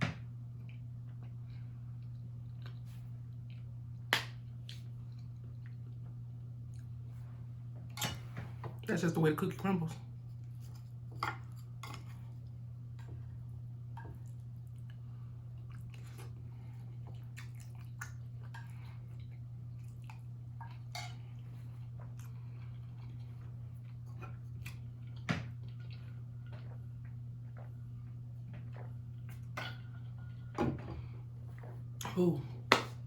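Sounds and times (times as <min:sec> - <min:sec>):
steady low hum: 0:00.0 - 0:33.0
mouth chewing and smacking: 0:15.6 - 0:18.5.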